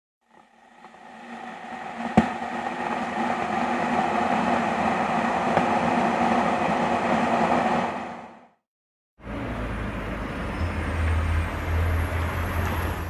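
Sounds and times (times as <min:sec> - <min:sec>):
vehicle rumble: 0:09.2 - 0:13.0.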